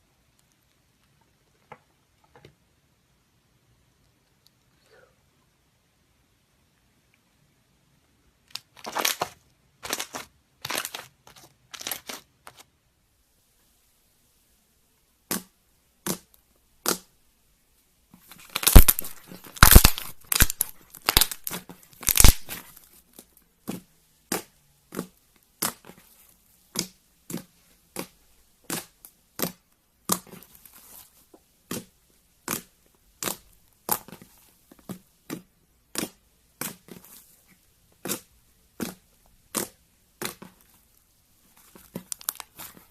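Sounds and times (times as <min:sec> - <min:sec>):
slime crackling and popping: 0:08.5 - 0:12.2, 0:18.3 - 0:37.3, 0:38.0 - 0:42.9.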